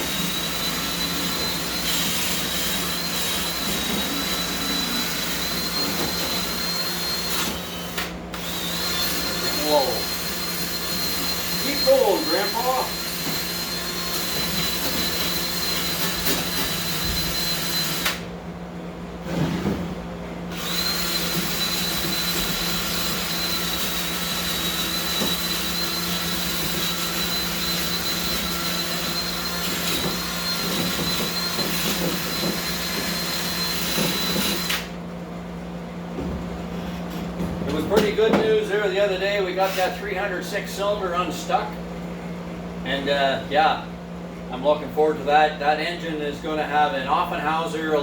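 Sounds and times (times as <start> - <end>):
power tool whining: 0.0 - 18.3, 20.5 - 35.0.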